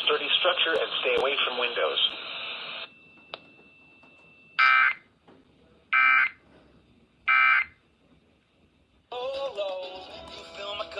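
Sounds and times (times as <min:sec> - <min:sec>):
music: 0:09.1 - 0:10.9.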